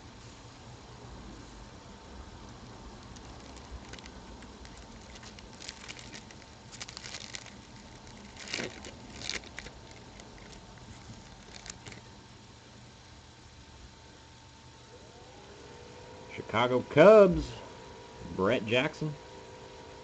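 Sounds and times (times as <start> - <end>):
low background hum: 0.0 - 20.0
cards crinkling and rustling: 2.6 - 12.2.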